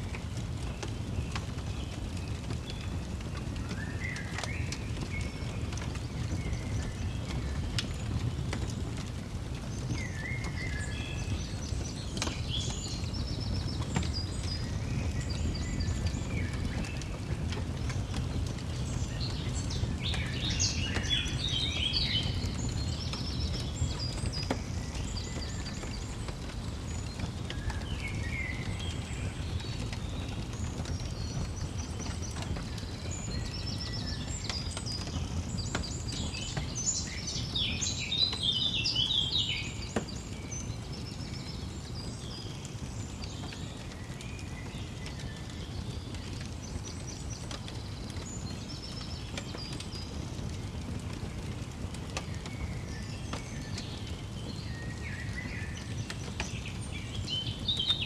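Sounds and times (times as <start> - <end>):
fireplace crackling pops: 0.0 - 38.6, 39.9 - 57.1
songbirds chirping and trilling: 0.1 - 58.0.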